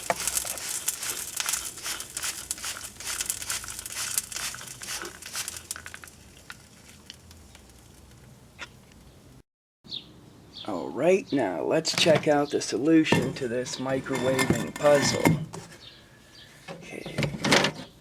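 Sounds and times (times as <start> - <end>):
cooling plastic crackling and popping: 0.0 - 9.1.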